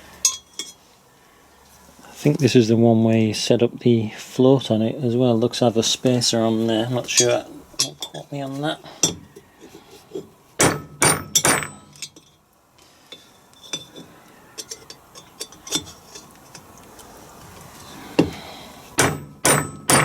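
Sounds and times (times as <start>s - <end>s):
hammer striking metal with ringing: 10.6s - 12.2s, 19.0s - 20.0s.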